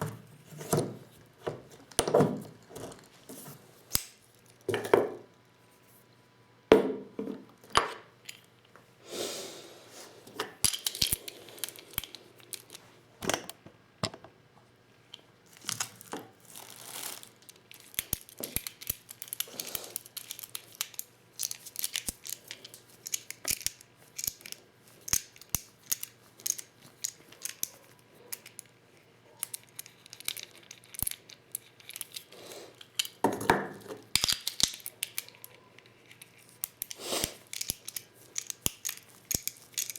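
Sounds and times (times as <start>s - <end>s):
rustling and scraping: 0.0s - 3.9s
small clicks and clinks of shells: 10.5s - 12.8s, 15.1s - 39.9s.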